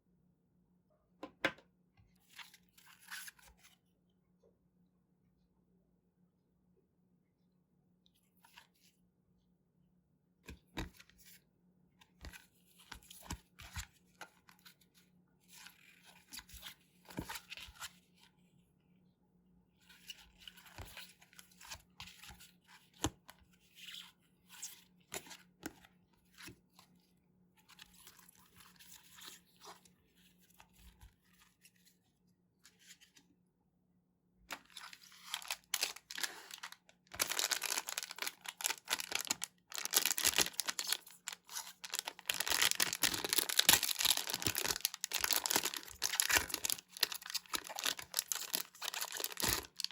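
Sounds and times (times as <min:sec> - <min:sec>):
card wrappers crinkling: 0:34.5 - 0:49.9.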